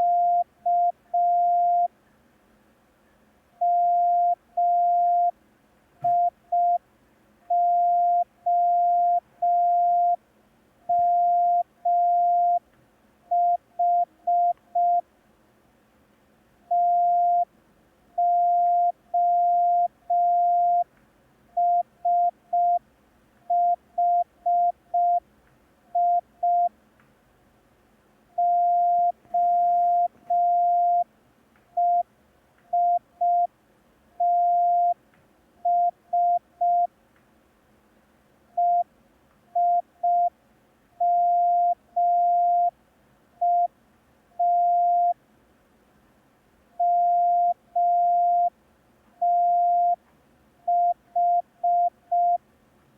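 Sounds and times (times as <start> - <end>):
morse code tone: 0.0 - 1.9, 16.7 - 17.5, 18.2 - 20.8, 21.6 - 22.8, 23.5 - 25.2, 26.0 - 26.7, 28.4 - 31.0, 31.8 - 32.0, 32.7 - 33.5, 34.2 - 35.0, 35.6 - 36.9, 41.0 - 42.7, 46.8 - 48.5, 49.2 - 50.0.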